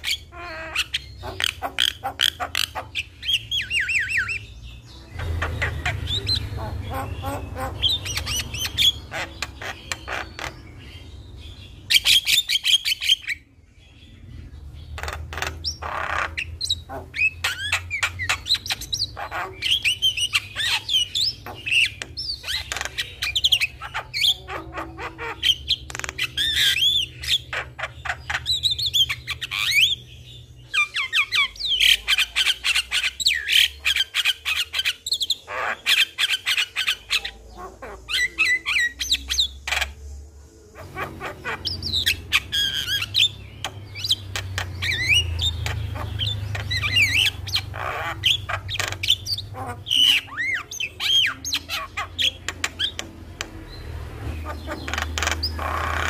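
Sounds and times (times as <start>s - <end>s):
bird singing whistles and squawks: 0.0s - 11.1s, 11.7s - 13.5s, 40.7s - 53.1s.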